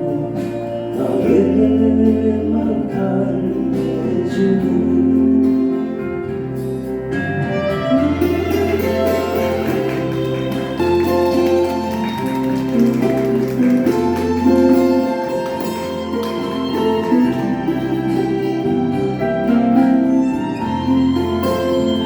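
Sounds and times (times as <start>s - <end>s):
plucked guitar and bass: 0.0s - 22.0s
slow ballad instrumental: 0.0s - 22.0s
bowed strings: 6.6s - 22.0s.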